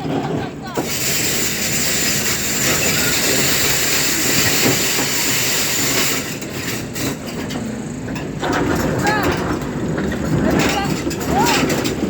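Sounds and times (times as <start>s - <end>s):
excavator diesel engine rumble: 0.0s - 12.0s
loud steady hiss: 0.8s - 7.0s.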